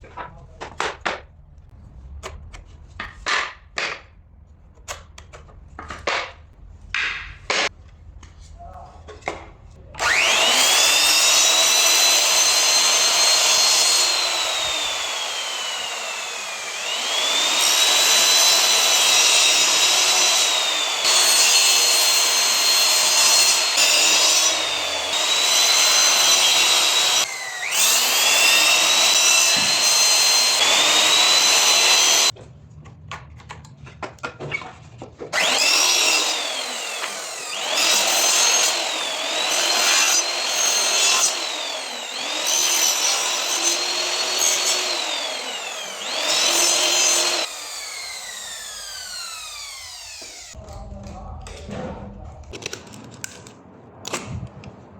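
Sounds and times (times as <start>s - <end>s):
power tool motor whine: 10.0s - 32.3s, 35.4s - 50.6s.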